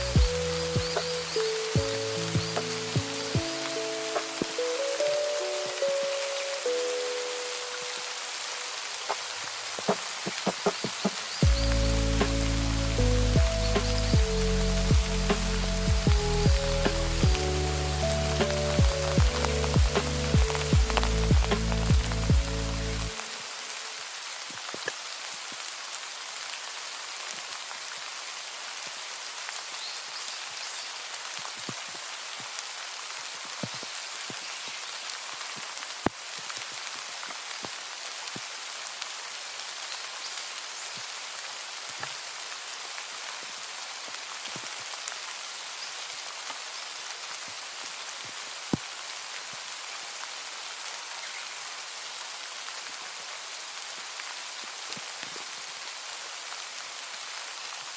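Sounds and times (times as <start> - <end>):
steady rain hissing: 0.0 - 57.9.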